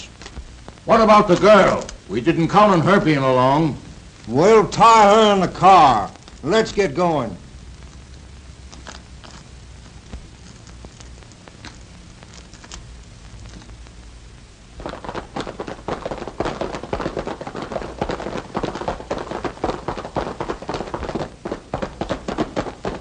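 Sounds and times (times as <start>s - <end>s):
horse hoofbeats galloping: 14.8s - 23.0s.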